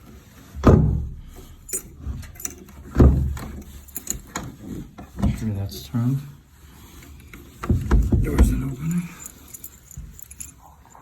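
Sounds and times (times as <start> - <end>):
door thumping: 0.6 - 1.4, 2.9 - 3.6, 7.6 - 8.8
keys jingling: 1.5 - 2.7, 3.5 - 4.4, 8.3 - 11.0.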